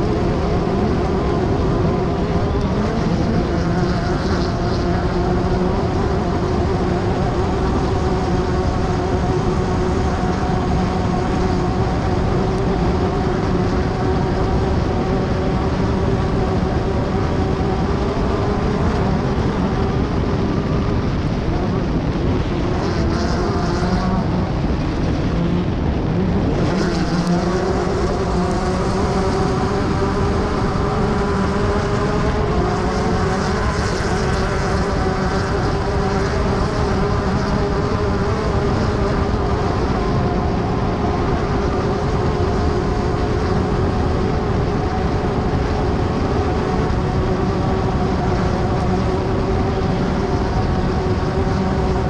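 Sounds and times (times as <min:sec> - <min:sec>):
race car engine at high revs: 0:00.0 - 0:52.0.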